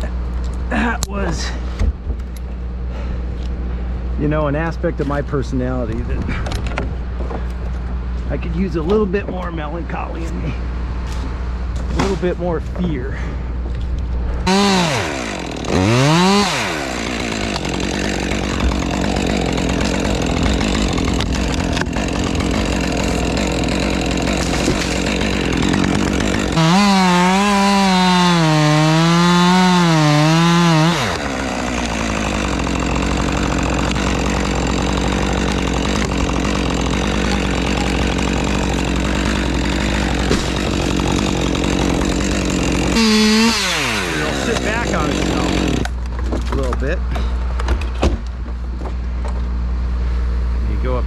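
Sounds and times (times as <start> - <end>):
chainsaw cutting tree trunk: 14.4 - 46.7.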